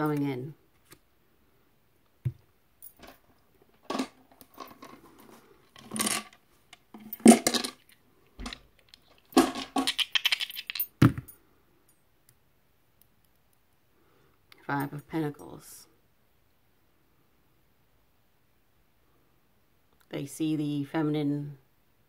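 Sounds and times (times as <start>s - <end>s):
small objects clattering on table: 3.8s - 11.3s.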